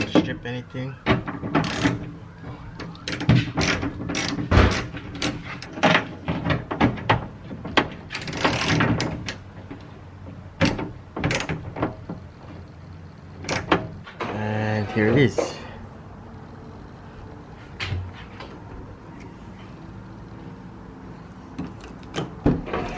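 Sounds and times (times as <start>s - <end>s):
hand ratchet clicking: 1.6s - 2.1s, 2.8s - 5.8s, 8.1s - 9.4s.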